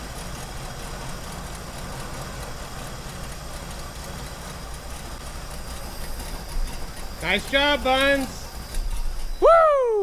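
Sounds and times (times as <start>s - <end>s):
engine idling: 0.0s - 10.0s.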